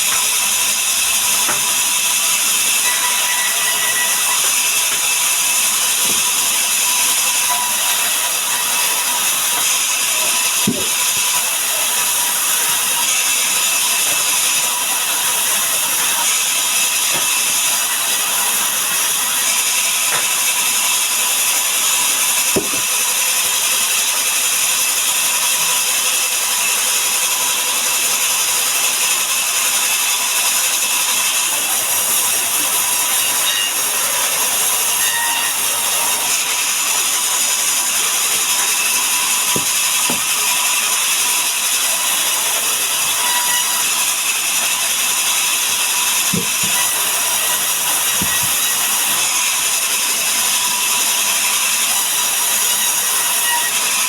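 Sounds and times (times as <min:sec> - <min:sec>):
sawmill saw cutting wood: 0:00.0 - 0:54.0
sharp knocks: 0:22.6 - 0:22.9, 0:39.5 - 0:40.4.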